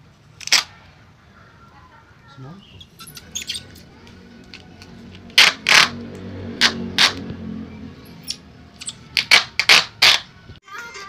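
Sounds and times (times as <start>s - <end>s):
packing tape clicking: 0.4s - 0.7s
packing tape ripping: 0.4s - 0.8s.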